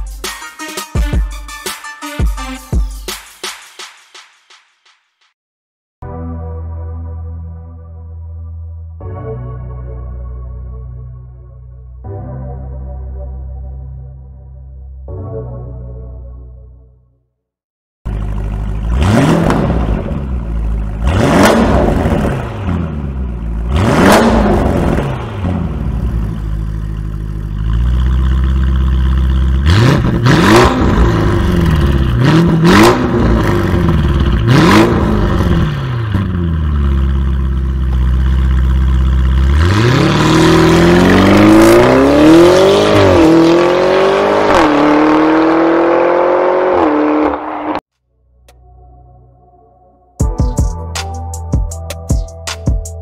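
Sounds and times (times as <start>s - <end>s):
car accelerating away: 18.1s - 47.8s
car engine revving: 18.1s - 47.8s.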